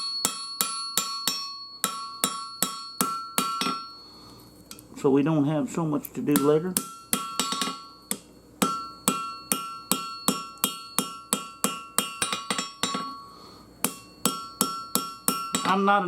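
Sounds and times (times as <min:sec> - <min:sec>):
hammer blows on an anvil: 0:00.0 - 0:04.0, 0:06.3 - 0:16.0.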